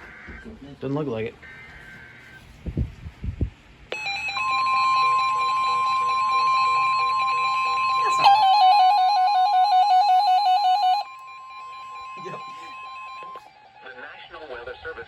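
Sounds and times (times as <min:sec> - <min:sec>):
steady radio alert tone: 0:03.9 - 0:14.0
warbling alarm: 0:03.9 - 0:14.3.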